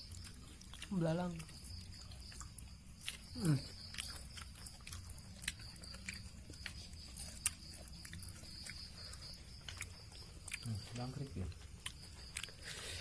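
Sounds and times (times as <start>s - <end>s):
person chewing crunchy insects: 0.0s - 13.0s.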